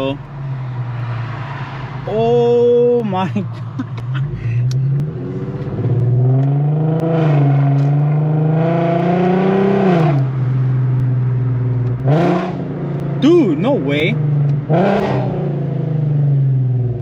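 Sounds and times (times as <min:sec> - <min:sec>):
car engine revving loudly: 0:04.3 - 0:17.0.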